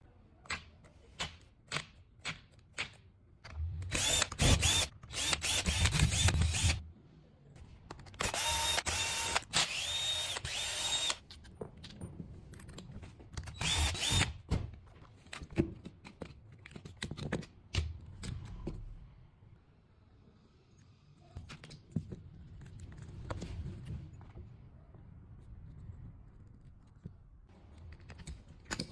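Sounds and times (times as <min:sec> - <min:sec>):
impact wrench motor whining: 0:03.8 - 0:06.8, 0:08.2 - 0:11.2, 0:13.6 - 0:14.4.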